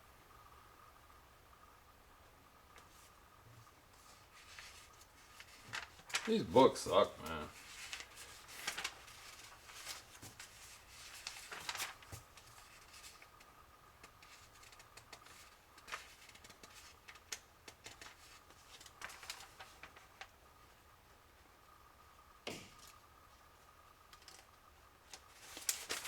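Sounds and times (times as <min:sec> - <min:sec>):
faint high hum: 0:00.0 - 0:26.0
paper pages rustling: 0:03.9 - 0:20.4, 0:25.0 - 0:26.0.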